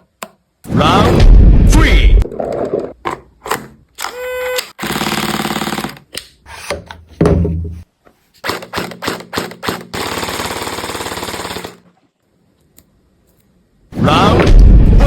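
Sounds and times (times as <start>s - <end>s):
heavy low thump: 14.4s - 15.0s.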